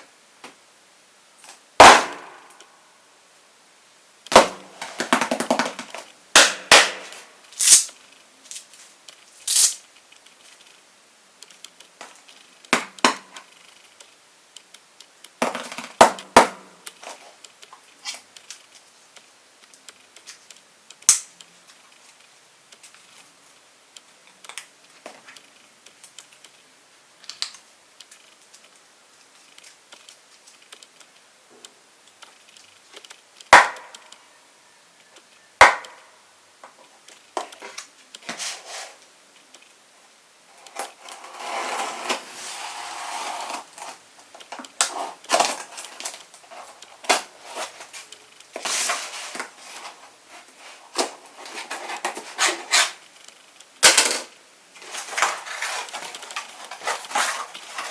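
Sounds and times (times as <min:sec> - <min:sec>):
packaging rustling: 0:54.8 - 0:57.9.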